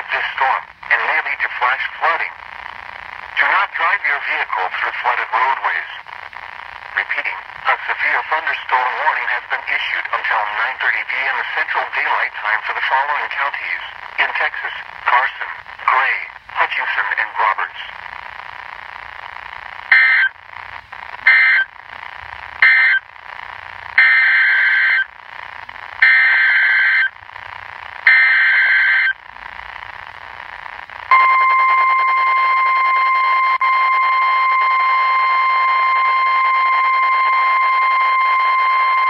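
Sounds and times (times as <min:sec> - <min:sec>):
radio hiss: 0:00.0 - 0:39.0
steady warning alarm tone: 0:19.9 - 0:20.4, 0:21.2 - 0:21.7, 0:22.6 - 0:23.1, 0:24.0 - 0:25.1, 0:26.0 - 0:27.2, 0:28.0 - 0:29.2, 0:31.1 - 0:39.0.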